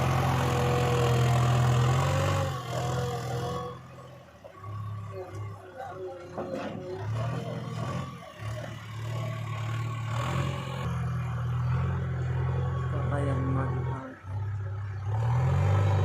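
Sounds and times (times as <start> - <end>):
heavy diesel machinery running: 0.0 - 16.0
faint clatter: 5.2 - 7.5.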